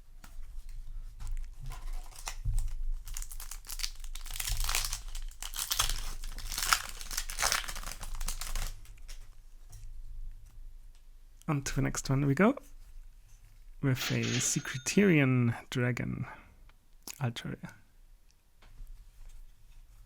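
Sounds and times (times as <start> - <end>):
foil wrapper crinkling and tearing: 1.3 - 9.3.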